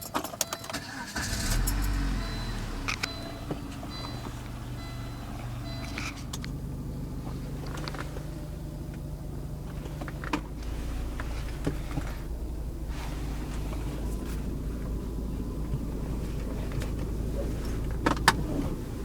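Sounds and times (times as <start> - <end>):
car engine running steadily: 0.0 - 19.0.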